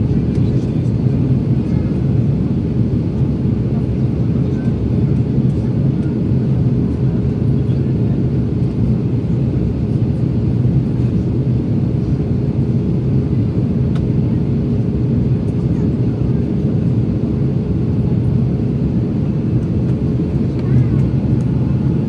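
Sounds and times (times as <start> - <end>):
airplane engines droning: 0.0 - 22.0
constant low hum: 0.0 - 22.0.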